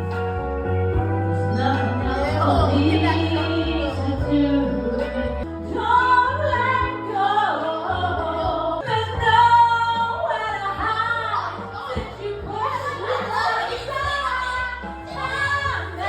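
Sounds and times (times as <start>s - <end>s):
bass line: 0.0s - 16.0s
woman singing: 1.3s - 16.0s.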